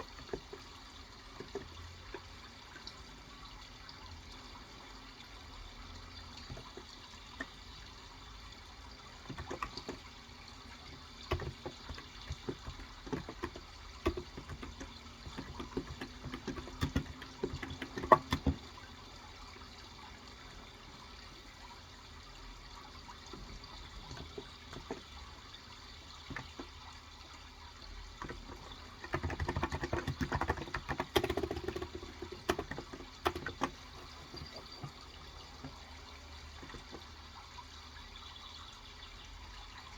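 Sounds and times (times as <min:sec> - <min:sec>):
keyboard typing: 0:00.0 - 0:02.3, 0:09.3 - 0:10.2, 0:10.9 - 0:18.8, 0:23.4 - 0:25.2, 0:26.3 - 0:26.7, 0:28.2 - 0:35.9, 0:36.6 - 0:37.1
trickling water: 0:00.0 - 0:39.9.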